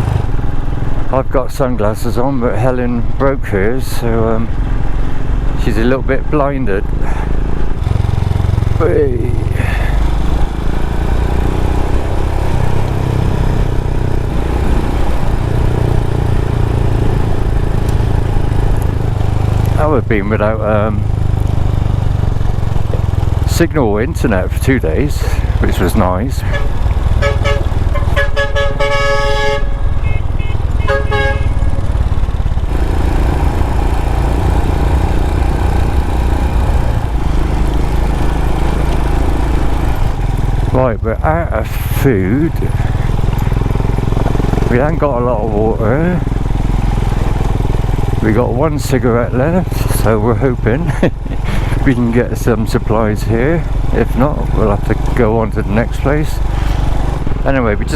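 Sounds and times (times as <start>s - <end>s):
motorcycle engine running: 0.0s - 57.9s
vehicle horn toots: 26.4s - 31.9s.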